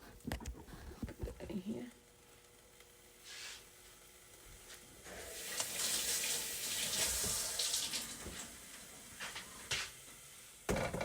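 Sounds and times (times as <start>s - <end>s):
oil sizzling in a hot pan: 2.4s - 4.4s, 5.0s - 10.7s.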